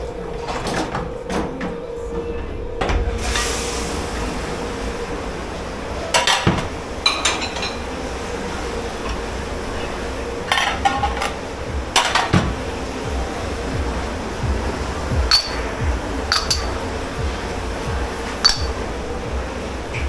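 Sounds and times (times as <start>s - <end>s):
steady background hum: 0.0s - 20.0s
crockery and cutlery clattering: 6.1s - 8.1s, 10.3s - 12.7s, 15.1s - 17.4s, 18.2s - 19.0s.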